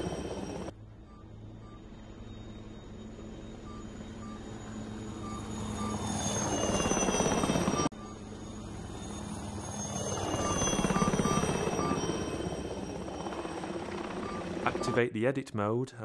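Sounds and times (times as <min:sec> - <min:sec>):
helicopter rotor chop: 0:00.0 - 0:00.7, 0:02.0 - 0:15.1
turbine whine: 0:00.0 - 0:15.1.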